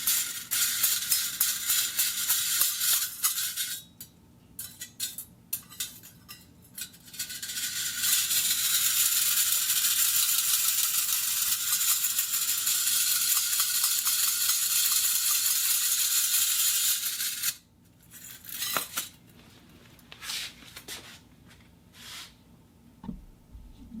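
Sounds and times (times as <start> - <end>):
small metal gears clicking: 0.0 - 3.9, 6.8 - 19.1
high-pitched metallic rattling whirr: 6.8 - 17.6.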